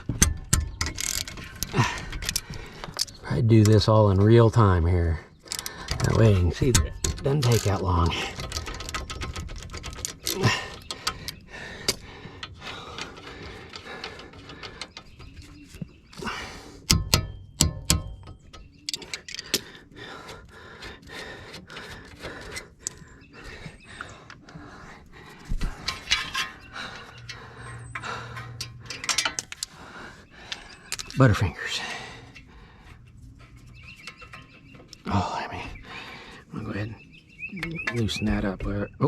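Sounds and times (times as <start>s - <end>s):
hand tools clicking and knocking: 0.0s - 35.1s
loud ringing metallic clanks: 16.8s - 18.9s.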